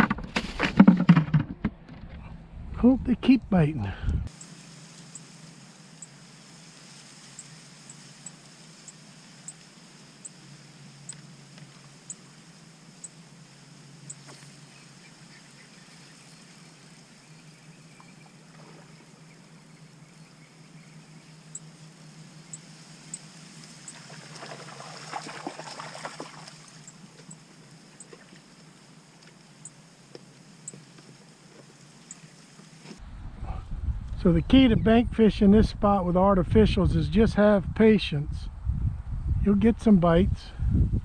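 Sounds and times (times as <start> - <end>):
steady low hum: 0.0 - 41.0
faint high ticks: 4.4 - 5.3, 7.4 - 10.4, 11.0 - 12.3, 26.4 - 32.7.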